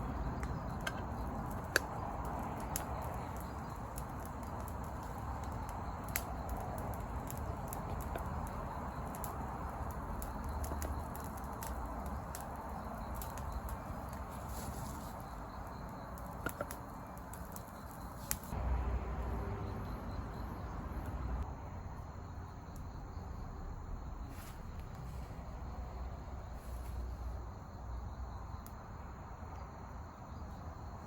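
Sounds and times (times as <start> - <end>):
sharp fire pops: 0.0 - 18.6
campfire crackling: 0.0 - 21.5, 22.5 - 29.5.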